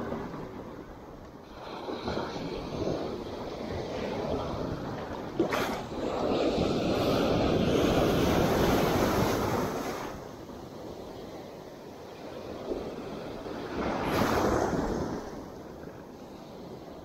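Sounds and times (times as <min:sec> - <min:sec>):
sea waves washing on shore: 0:00.0 - 0:17.0.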